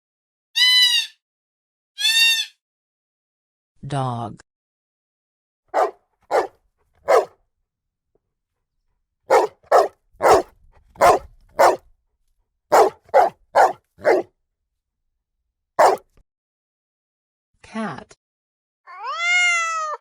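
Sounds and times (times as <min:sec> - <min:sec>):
dog barking: 0:05.7 - 0:07.4, 0:09.3 - 0:11.9, 0:12.7 - 0:14.3, 0:15.8 - 0:16.1.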